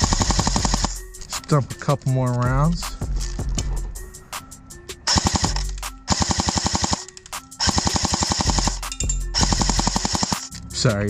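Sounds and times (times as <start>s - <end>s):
airsoft rifle firing bursts: 0.0s - 1.0s, 5.1s - 10.5s.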